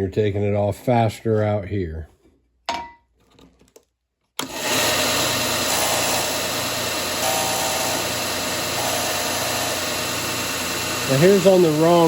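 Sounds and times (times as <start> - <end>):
belt sander running: 4.4 - 12.0.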